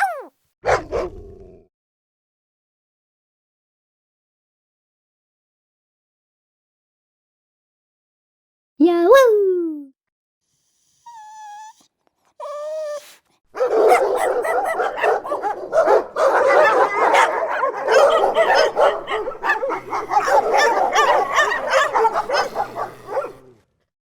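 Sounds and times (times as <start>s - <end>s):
dog whining: 0.0s - 0.3s, 10.6s - 13.2s, 16.4s - 23.4s
dogs barking and yipping: 0.0s - 1.1s, 12.5s - 23.6s.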